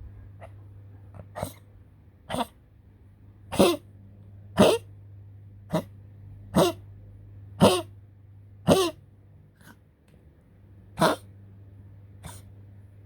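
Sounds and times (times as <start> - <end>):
dog coughing: 1.2 - 1.6, 2.3 - 2.6, 3.5 - 3.8, 4.6 - 4.9, 6.6 - 6.8, 7.6 - 7.9, 8.6 - 9.0, 11.0 - 11.3, 12.2 - 12.5.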